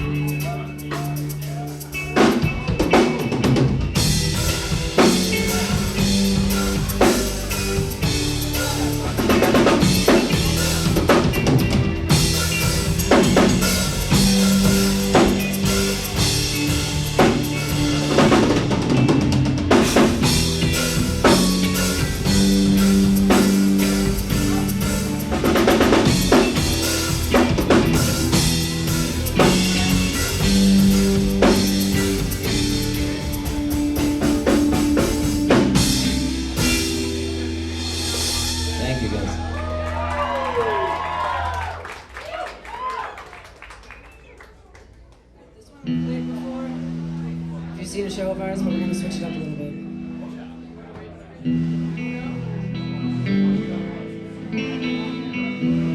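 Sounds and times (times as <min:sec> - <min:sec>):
low bass notes: 0:00.0 - 0:41.8, 0:45.9 - 0:55.9
drum kit: 0:00.0 - 0:42.1.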